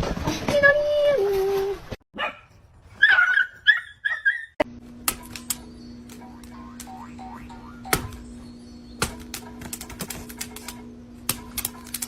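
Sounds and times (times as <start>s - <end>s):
low hum: 4.6s - 12.0s.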